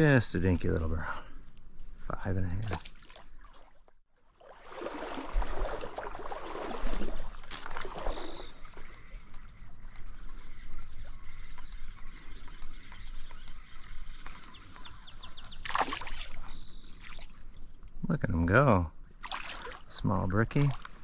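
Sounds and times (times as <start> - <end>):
water sloshing and splashing: 2.6 - 10.5, 12.4 - 17.8, 19.2 - 21.0.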